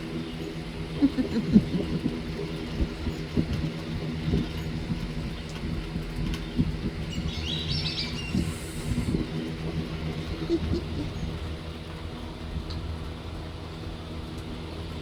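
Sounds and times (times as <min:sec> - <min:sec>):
low hum: 0:00.0 - 0:15.0
bird chirping: 0:07.0 - 0:09.2.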